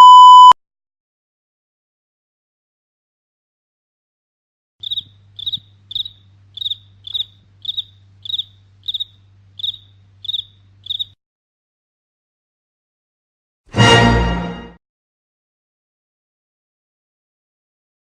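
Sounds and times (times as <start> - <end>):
faint low hum: 4.8 - 11.1
cricket chirping: 4.8 - 11.2.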